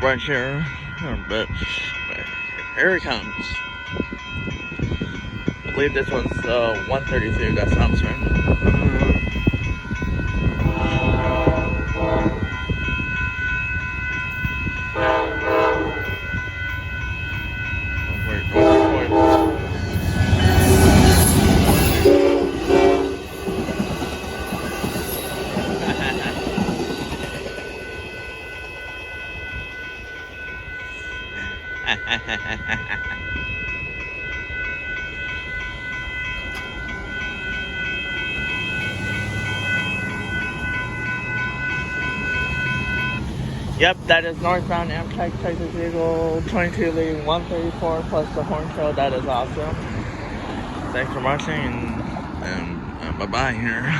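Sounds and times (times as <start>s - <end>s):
passenger train passing: 0.0s - 53.9s
locomotive horn blasts: 10.6s - 12.6s, 14.8s - 16.4s, 18.1s - 23.4s, 38.3s - 43.4s.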